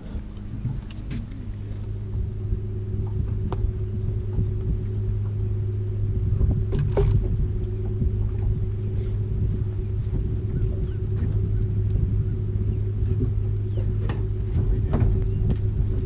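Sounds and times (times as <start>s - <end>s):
boat motor humming: 0.0s - 16.0s
knocks in boat: 6.4s - 8.6s, 13.0s - 16.0s.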